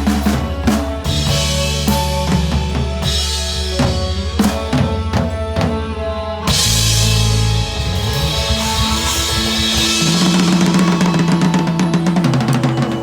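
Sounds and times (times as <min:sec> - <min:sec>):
bass guitar: 0:00.0 - 0:13.0
drum kit beat: 0:00.0 - 0:13.0
guitar: 0:00.0 - 0:13.0
cymbal crash: 0:06.5 - 0:13.0.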